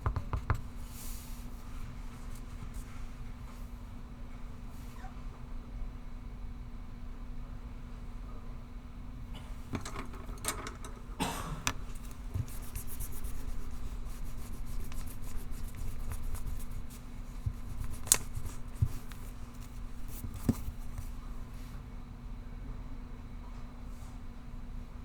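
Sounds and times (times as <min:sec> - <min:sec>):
pencil scratching on paper: 0:11.8 - 0:21.2.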